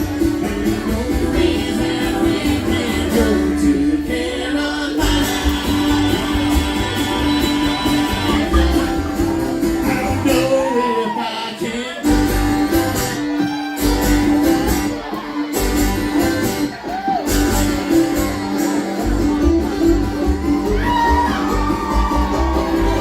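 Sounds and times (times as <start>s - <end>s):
person singing: 0.0s - 13.8s
acoustic guitar: 0.0s - 23.0s
band playing: 0.0s - 23.0s.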